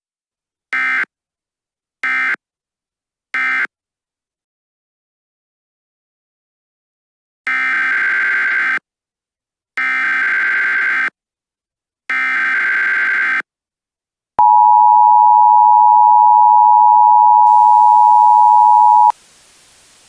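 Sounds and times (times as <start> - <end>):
two-tone attention signal: 14.4 - 19.1.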